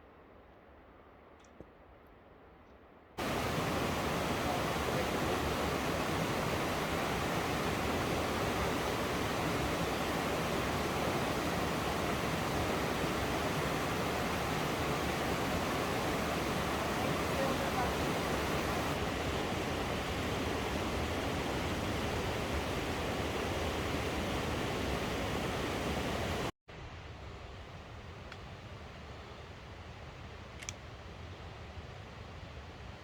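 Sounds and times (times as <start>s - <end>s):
waterfall rushing: 3.2s - 26.5s.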